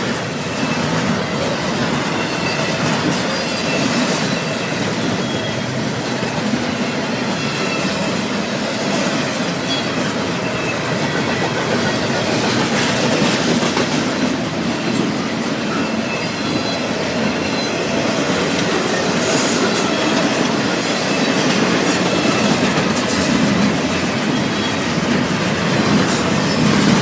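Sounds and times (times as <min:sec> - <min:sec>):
train wheels rumbling on rail: 0:00.0 - 0:27.0
wheels clacking over rail joints: 0:00.0 - 0:27.0
high-pitched wheel squeals: 0:02.0 - 0:05.8, 0:09.2 - 0:11.2, 0:15.1 - 0:22.6.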